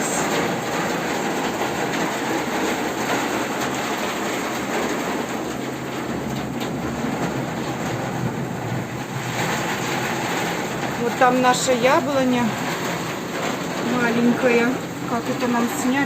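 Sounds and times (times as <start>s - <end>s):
torrential rain pouring: 0.0s - 16.0s.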